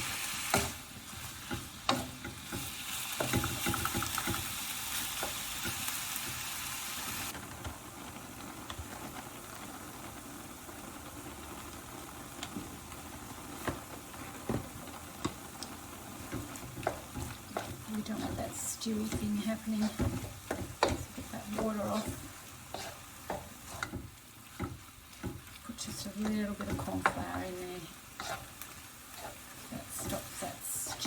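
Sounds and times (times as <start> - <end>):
mince sizzling in a pan: 0.0 - 31.0
utensil knocking and scraping: 16.4 - 25.4, 28.2 - 28.6.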